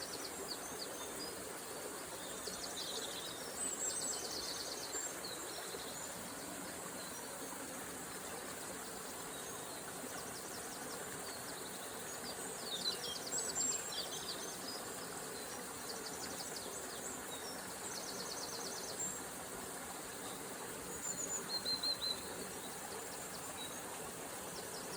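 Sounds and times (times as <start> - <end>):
songbirds singing: 0.0 - 24.9.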